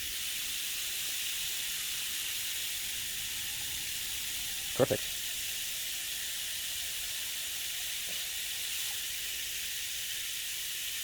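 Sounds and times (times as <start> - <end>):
running water hissing: 0.0 - 11.0.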